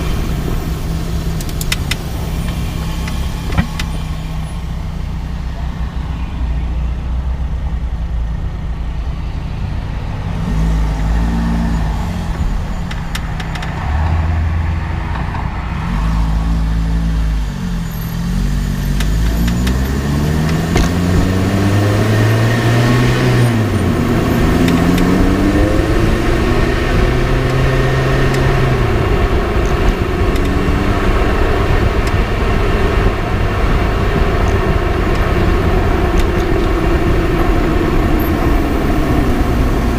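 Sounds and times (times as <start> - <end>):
car engine accelerating: 0.0 - 39.9
road and tyre rumble: 0.0 - 39.9
sharp suspension clicks: 1.3 - 4.1, 12.8 - 14.2, 18.0 - 21.5.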